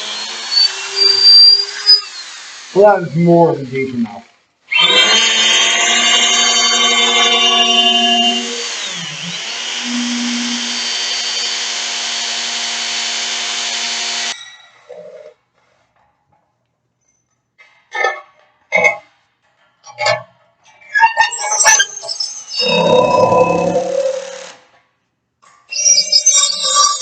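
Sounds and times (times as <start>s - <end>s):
hammer drill boring into concrete: 0.0s - 14.7s, 21.4s - 24.8s.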